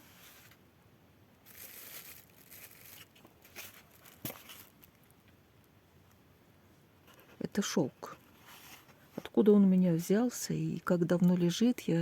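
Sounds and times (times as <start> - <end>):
thread cards rustling: 1.4 - 5.1.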